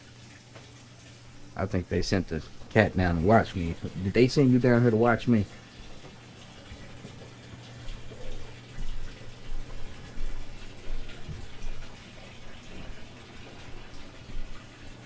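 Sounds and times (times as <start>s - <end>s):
water running: 0.0s - 15.0s.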